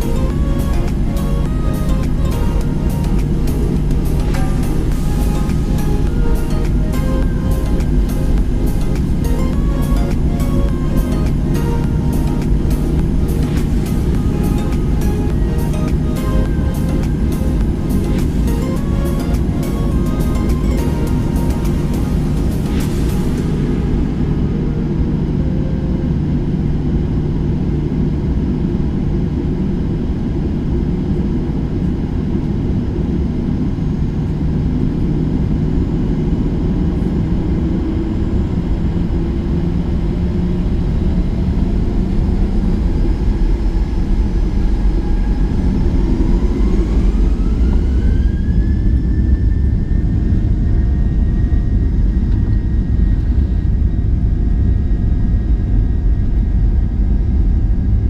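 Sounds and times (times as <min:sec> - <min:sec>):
jet engine cabin rumble: 0:00.0 - 0:58.0
jet engine whine rising: 0:00.0 - 0:58.0.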